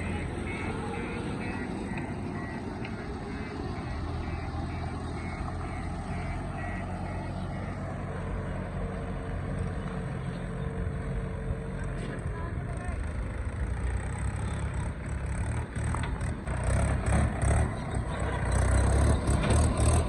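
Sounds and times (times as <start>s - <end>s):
reversing alarm beeping: 0.0s - 7.8s
diesel engine running: 0.0s - 20.0s.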